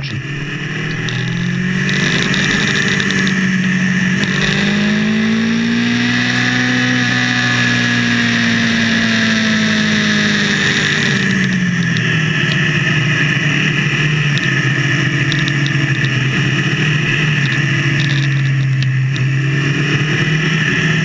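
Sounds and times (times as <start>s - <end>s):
motorcycle engine running: 0.0s - 21.0s
wind and road noise: 0.0s - 21.0s.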